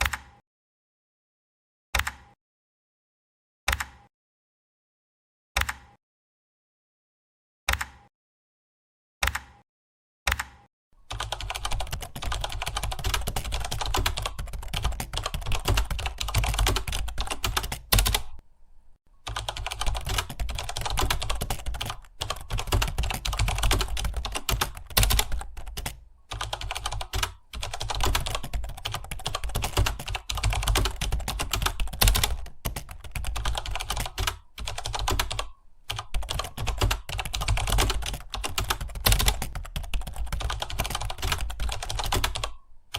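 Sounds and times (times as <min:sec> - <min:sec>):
keyboards typing: 0:11.1 - 0:18.4, 0:19.2 - 0:42.6.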